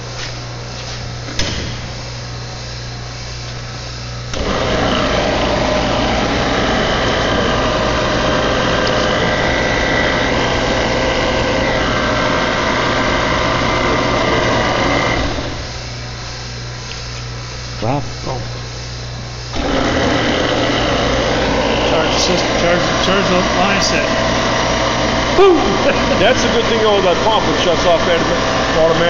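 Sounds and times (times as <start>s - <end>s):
electric pump whining: 0.0s - 29.0s.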